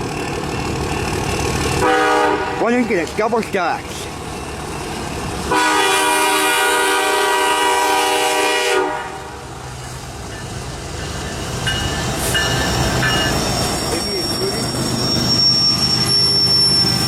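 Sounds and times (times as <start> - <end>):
train cars rumbling past: 0.0 - 17.0
locomotive air horn blast: 1.8 - 2.7, 5.5 - 9.4
high-pitched wheel squeal: 12.4 - 17.0.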